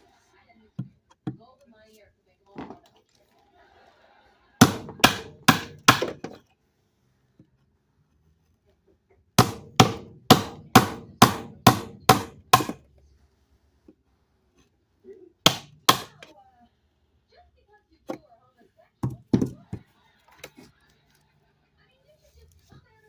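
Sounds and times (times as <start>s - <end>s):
hammer striking chisel into wood: 4.6s - 6.4s, 9.4s - 12.9s, 15.4s - 16.3s.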